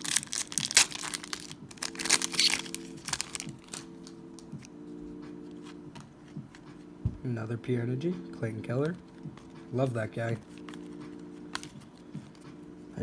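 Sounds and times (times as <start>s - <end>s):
foil wrappers crinkling: 0.0s - 4.6s, 10.4s - 12.0s
trading cards flicking and sliding: 10.4s - 12.4s.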